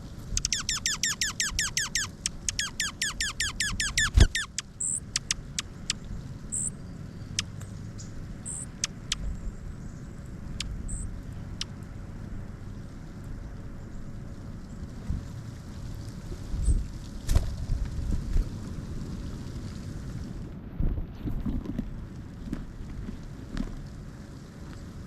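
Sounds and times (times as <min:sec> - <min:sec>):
woodpecker calling: 0:00.0 - 0:07.5, 0:08.5 - 0:09.3, 0:10.5 - 0:11.8
sharp ticks: 0:00.4 - 0:06.7, 0:08.5 - 0:09.3, 0:10.6 - 0:11.8.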